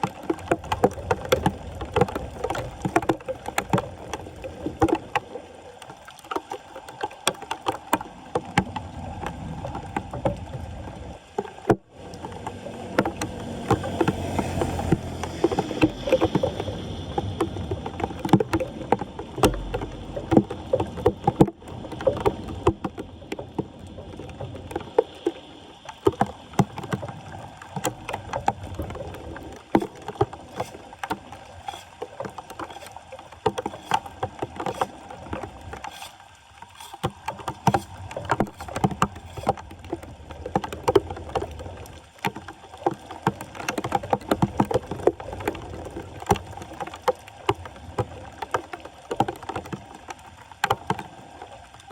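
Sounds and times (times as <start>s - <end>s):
floodwater splashing and sloshing: 0.0s - 51.9s
short knocks and scrapes: 29.7s - 40.0s.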